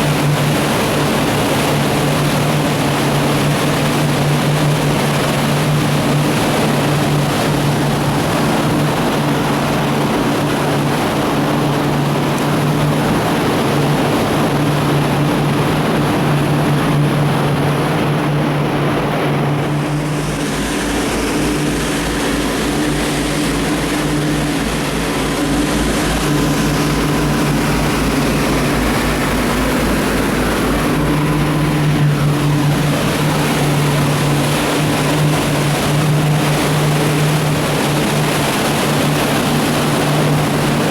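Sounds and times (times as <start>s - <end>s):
motorboat engine running: 0.0s - 40.9s
wind and water rushing: 0.0s - 40.9s
low throb: 13.0s - 37.9s.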